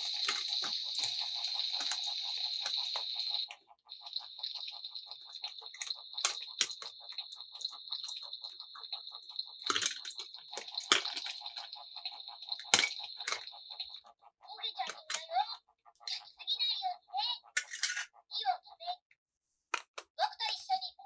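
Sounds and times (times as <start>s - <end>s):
electronic toy pulsing tone: 0.0s - 19.0s
plastic clicks: 19.7s - 20.2s.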